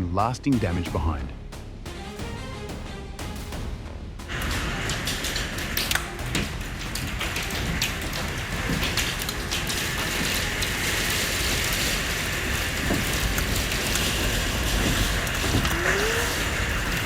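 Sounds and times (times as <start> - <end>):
heavy rain pouring: 4.3 - 17.0.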